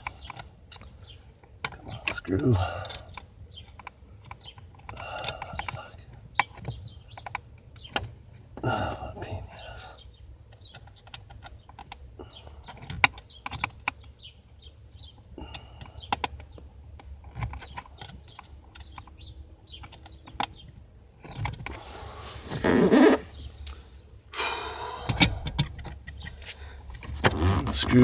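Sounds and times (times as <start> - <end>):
rustle: 10.1 - 28.0.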